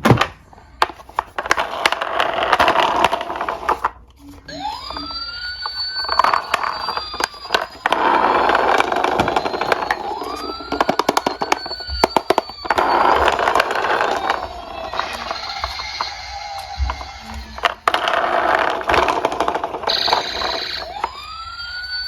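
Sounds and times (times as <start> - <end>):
toy cars rolling and clattering: 0.7 - 22.0
wailing emergency siren: 4.4 - 22.0.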